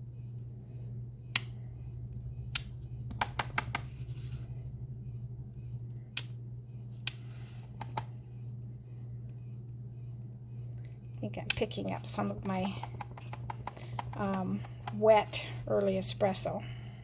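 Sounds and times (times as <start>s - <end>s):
steady low hum: 0.0s - 17.0s
rubber stamp taps: 3.1s - 3.9s, 12.6s - 15.0s.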